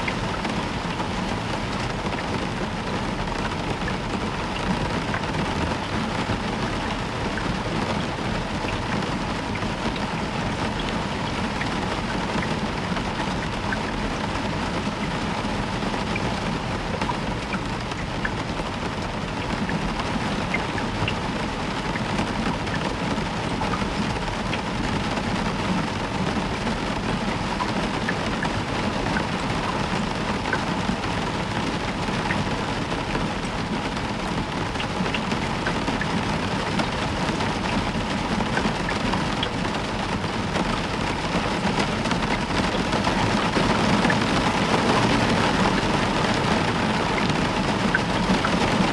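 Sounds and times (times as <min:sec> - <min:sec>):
heavy rain on a roof: 0:00.0 - 0:48.9
raindrops ticking: 0:00.0 - 0:48.9
distant thunder rumble: 0:23.0 - 0:27.3.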